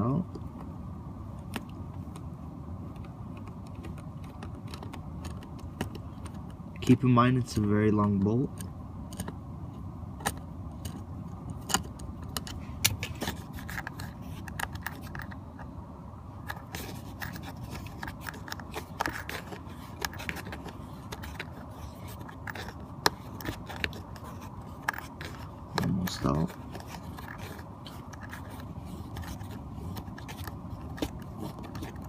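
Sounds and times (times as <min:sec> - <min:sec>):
steady low hum: 0:00.0 - 0:32.0
screwdriver clicking and scraping: 0:03.0 - 0:06.6, 0:10.2 - 0:15.7, 0:16.4 - 0:32.0.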